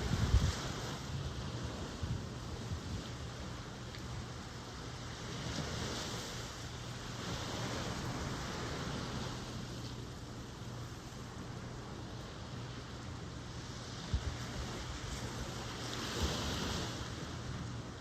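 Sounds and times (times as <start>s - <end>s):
ocean surf washing ashore: 0.0s - 18.0s
steady low rumble: 6.2s - 15.9s.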